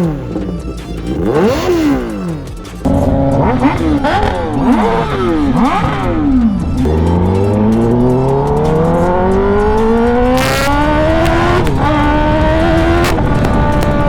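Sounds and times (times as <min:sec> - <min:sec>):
motorcycle engine revving: 0:00.0 - 0:14.0
motorcycle gear shift: 0:00.0 - 0:14.0.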